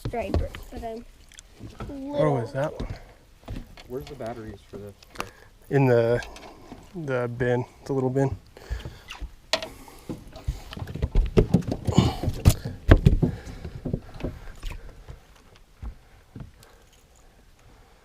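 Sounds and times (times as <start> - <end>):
gear knocking and clattering in boat: 8.3 - 15.2.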